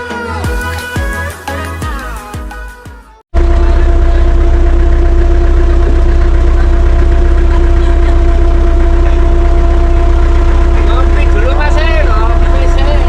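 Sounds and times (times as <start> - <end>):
vehicle engine running: 3.3 - 13.0.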